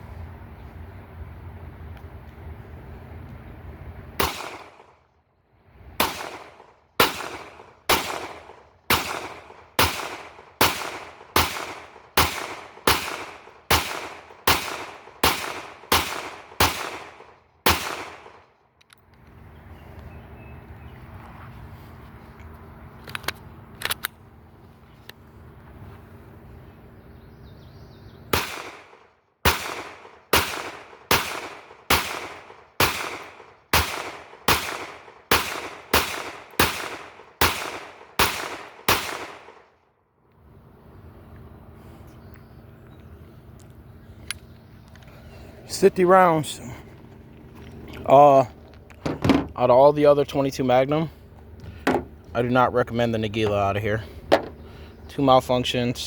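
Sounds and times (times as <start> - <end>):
pistol gunshots: 4.2 - 5.0, 6.0 - 18.5, 28.3 - 39.7.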